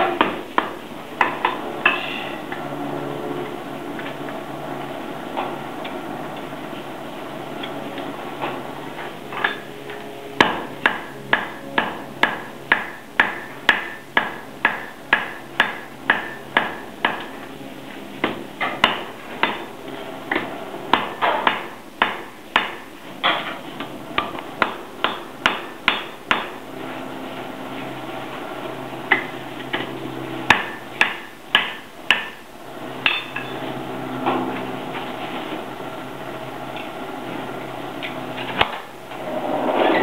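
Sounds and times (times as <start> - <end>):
hammer striking metal on anvil: 10.4 - 17.4, 18.2 - 19.7, 20.3 - 23.5, 24.2 - 26.6, 30.5 - 32.4, 33.0 - 33.6.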